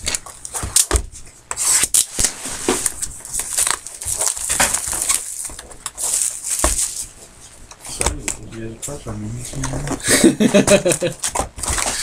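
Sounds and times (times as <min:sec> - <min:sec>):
card pack wrappers crinkling: 0:01.6 - 0:07.1.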